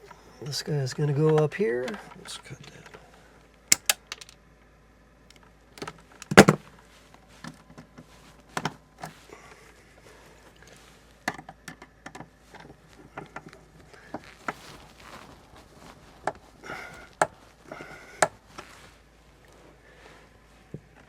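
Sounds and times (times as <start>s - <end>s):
hand tools clicking and knocking: 3.7s - 4.3s, 5.8s - 6.6s
tool clatter: 3.7s - 4.4s, 5.8s - 6.6s.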